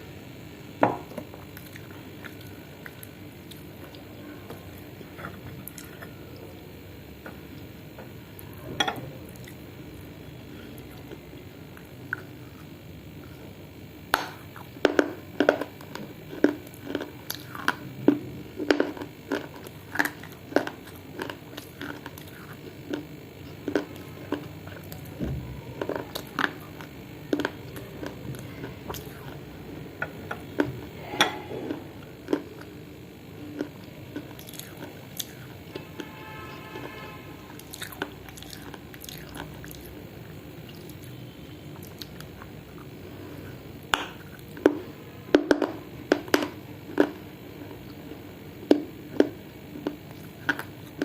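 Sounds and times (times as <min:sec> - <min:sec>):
crunchy chewing: 0:01.1 - 0:51.0.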